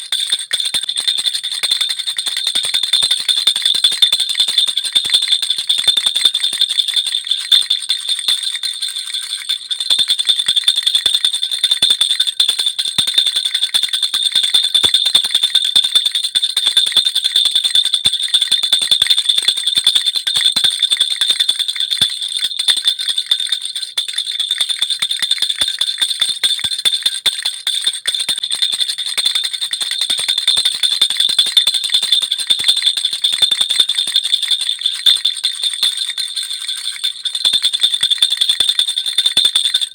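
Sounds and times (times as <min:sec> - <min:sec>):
baby rattle bells jingling: 0:00.0 - 0:39.9.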